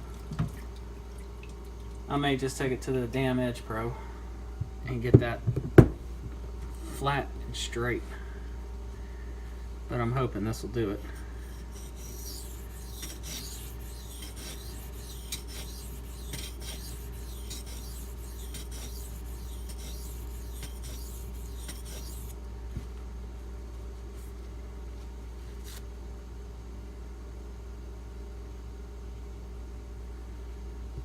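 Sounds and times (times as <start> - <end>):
knife scraping on sharpening stone: 11.5 - 22.3.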